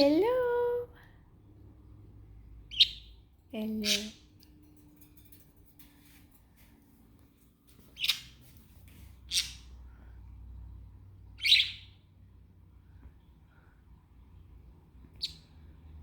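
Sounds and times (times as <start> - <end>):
budgerigar chirping: 2.7 - 3.1, 8.0 - 8.4, 9.3 - 9.6, 11.4 - 12.0.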